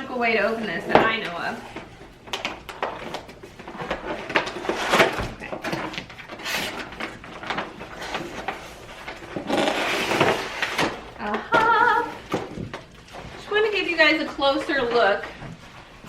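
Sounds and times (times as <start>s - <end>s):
packaging rustling and knocking: 0.9s - 13.4s.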